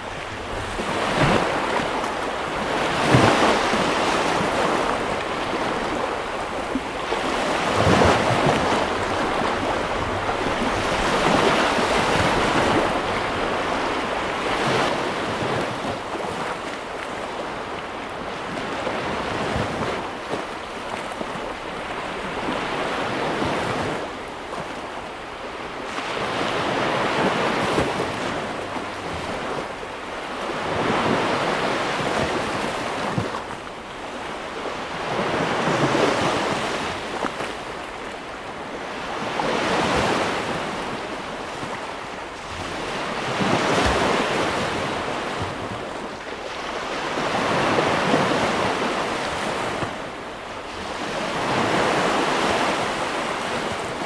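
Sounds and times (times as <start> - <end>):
wind on microphone: 0.0 - 24.2
sea waves breaking on shore: 0.0 - 54.0.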